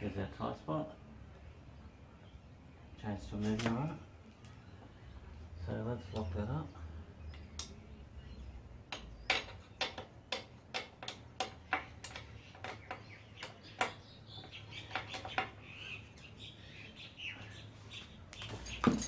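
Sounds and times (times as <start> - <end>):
spanner clicking metallically: 8.9 - 14.0.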